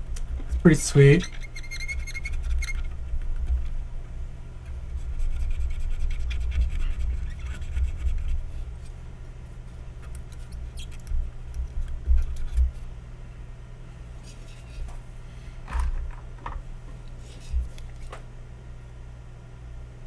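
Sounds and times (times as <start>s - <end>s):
scratching on circuit board: 0.0s - 3.8s, 4.6s - 9.0s, 9.6s - 12.8s
steady low hum: 0.0s - 20.0s.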